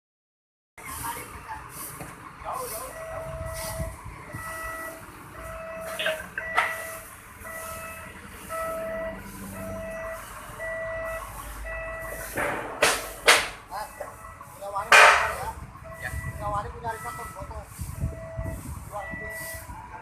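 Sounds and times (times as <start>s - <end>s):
low engine rumble: 0.8s - 20.0s
electronic warning beeper: 2.8s - 19.7s
sharp metallic knocks: 12.1s - 13.8s, 14.8s - 15.6s.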